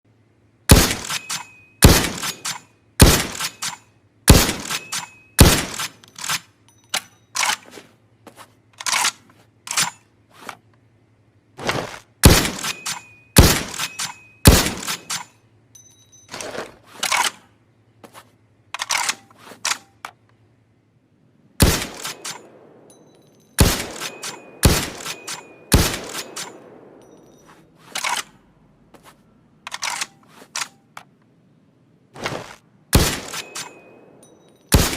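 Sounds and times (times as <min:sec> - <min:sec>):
rifle clicks: 0:00.7 - 0:07.8, 0:08.7 - 0:10.9, 0:12.2 - 0:15.4, 0:17.0 - 0:17.5, 0:18.6 - 0:20.4, 0:21.6 - 0:28.5, 0:29.6 - 0:31.4
rifle bolt strokes: 0:00.8 - 0:10.9, 0:12.3 - 0:15.4, 0:16.3 - 0:17.5, 0:18.1 - 0:20.4, 0:21.6 - 0:31.3, 0:33.0 - 0:34.9.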